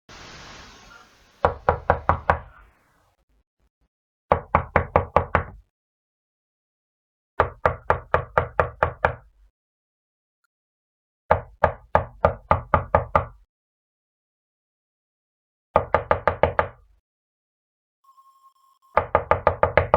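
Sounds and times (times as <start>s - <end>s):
faint hiss: 0.0s - 3.2s
knocking on wooden door: 1.4s - 2.5s, 4.3s - 5.6s, 7.4s - 9.2s, 11.3s - 13.4s, 15.8s - 16.8s, 19.0s - 19.9s.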